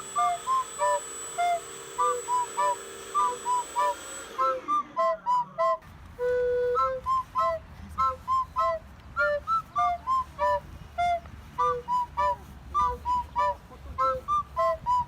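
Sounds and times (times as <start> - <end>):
bouncy whistle-like melody: 0.0 - 15.0.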